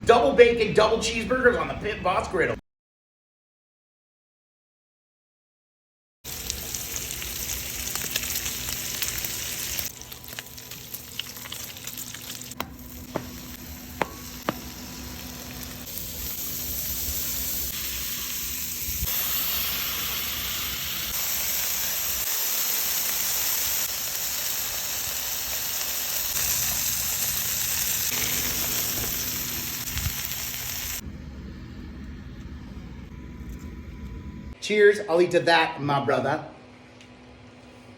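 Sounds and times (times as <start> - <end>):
meat sizzling on a griddle: 6.3 - 31.0.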